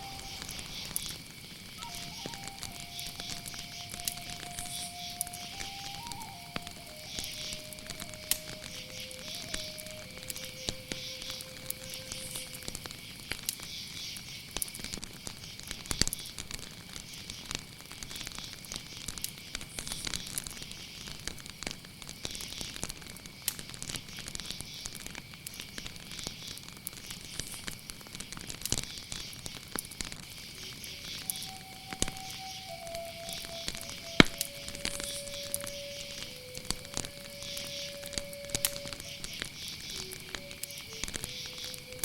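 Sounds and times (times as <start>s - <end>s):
crickets trilling: 0.0s - 42.0s
fire crackling and popping: 0.0s - 42.0s.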